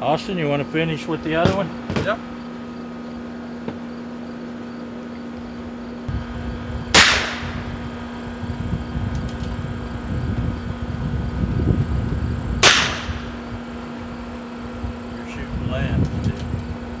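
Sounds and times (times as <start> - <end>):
revolver shots with echo: 6.9 - 7.6, 12.6 - 13.4.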